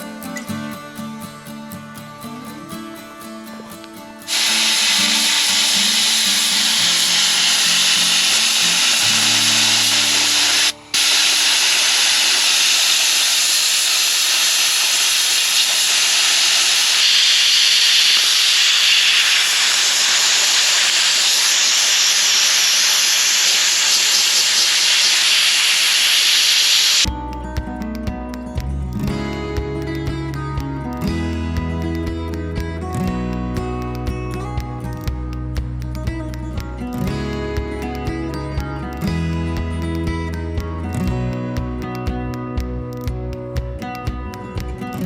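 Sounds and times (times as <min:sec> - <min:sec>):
loud steady hissing: 0:04.2 - 0:27.1.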